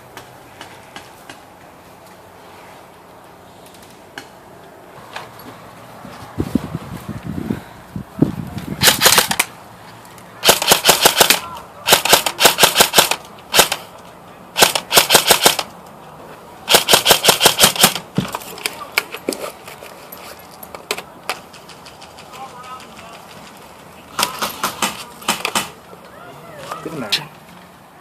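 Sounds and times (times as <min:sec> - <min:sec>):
airsoft gun firing bursts: 0:08.8 - 0:09.5, 0:10.4 - 0:13.8, 0:14.6 - 0:15.7, 0:16.7 - 0:18.0.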